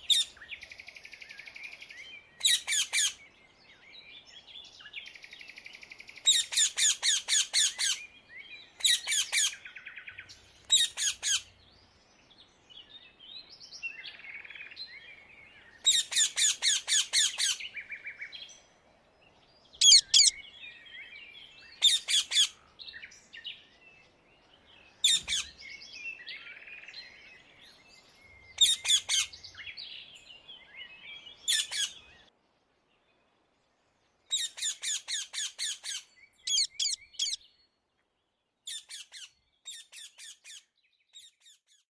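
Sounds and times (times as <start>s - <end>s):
parakeets screeching: 19.8s - 20.4s, 36.5s - 37.4s.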